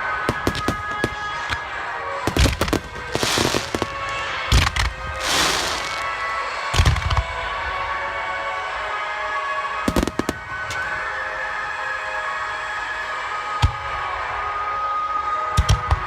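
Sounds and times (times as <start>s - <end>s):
music: 0.0s - 16.0s
fireworks booming: 0.3s - 7.1s
crackling sparks: 0.3s - 7.2s
fireworks popping: 0.3s - 7.3s.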